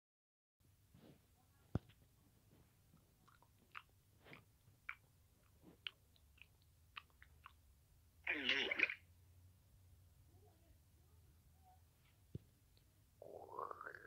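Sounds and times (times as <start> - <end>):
crunchy chewing: 3.2 - 7.6.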